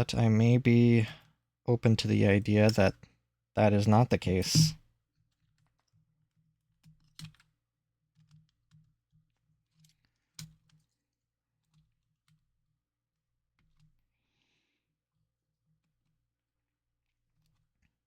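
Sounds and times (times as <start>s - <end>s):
small plastic parts clicking: 6.8s - 7.6s.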